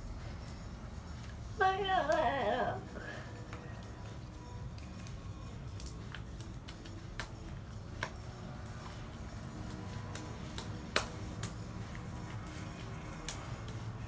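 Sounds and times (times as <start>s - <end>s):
slime snapping: 9.7s - 13.5s.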